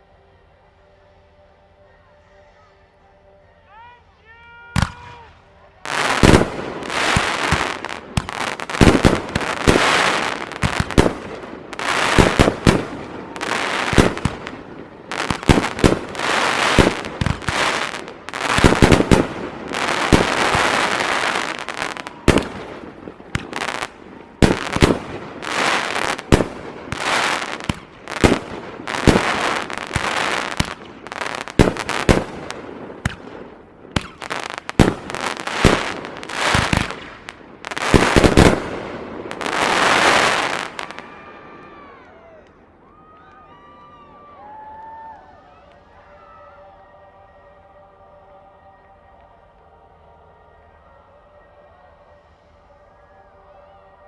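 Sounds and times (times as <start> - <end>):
fireworks crackling and hissing: 4.8 - 42.8
firework shells booming: 6.1 - 41.0.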